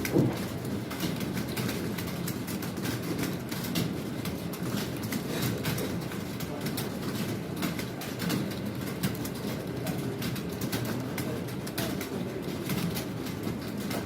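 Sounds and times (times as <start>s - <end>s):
many keyboards typing: 0.0s - 14.0s.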